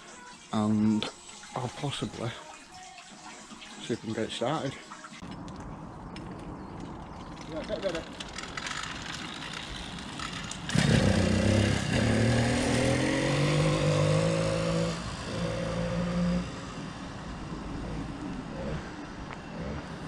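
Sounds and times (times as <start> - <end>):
two-stroke bicycle engine running: 6.6 - 20.0.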